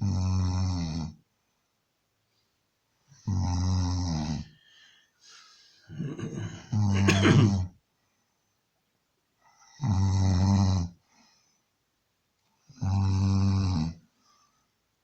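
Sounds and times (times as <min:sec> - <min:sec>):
man snoring: 0:03.3 - 0:04.5, 0:05.9 - 0:07.6, 0:12.8 - 0:14.0.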